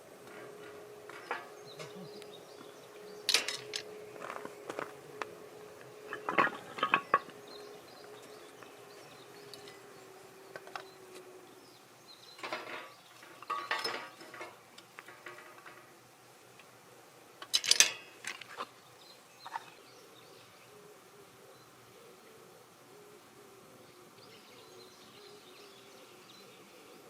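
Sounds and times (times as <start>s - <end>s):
dishes and cutlery clattering: 0.3s - 2.0s, 3.3s - 3.8s, 6.1s - 7.3s, 12.4s - 15.9s.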